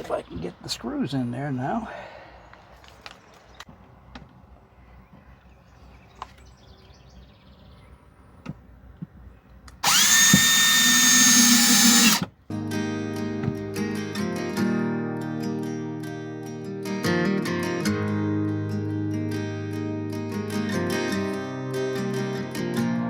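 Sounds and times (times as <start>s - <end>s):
drill handling clicks and taps: 9.6s - 12.3s
cordless drill motor whining: 9.8s - 12.3s.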